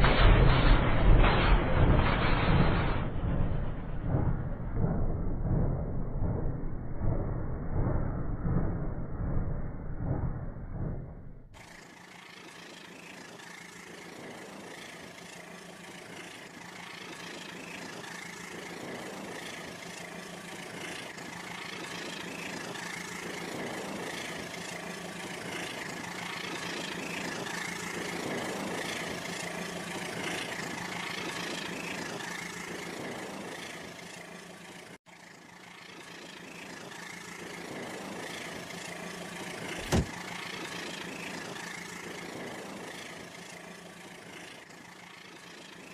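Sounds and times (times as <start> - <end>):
wood fire roaring and crackling: 11.6 - 45.9.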